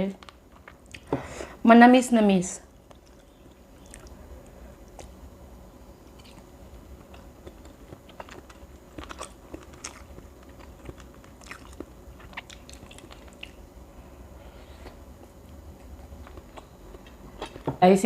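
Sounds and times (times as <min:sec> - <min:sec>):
chewing and crunching bone: 0:02.7 - 0:05.3, 0:06.0 - 0:13.7, 0:14.7 - 0:17.8.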